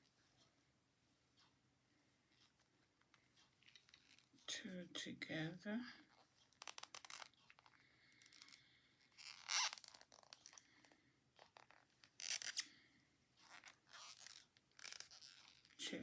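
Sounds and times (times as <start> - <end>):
yarn rubbing: 6.0 - 10.6, 13.4 - 16.0.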